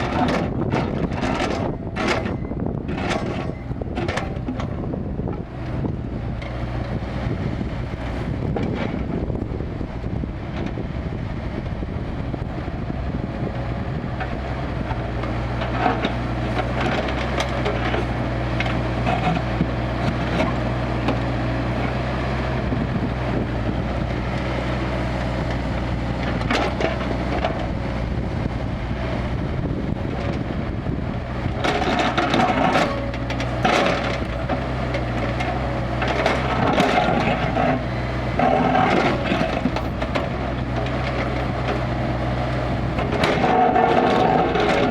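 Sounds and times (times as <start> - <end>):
diesel engine running: 0.0 - 44.9
bucket crunching and scraping earth: 31.4 - 42.0, 42.6 - 44.9.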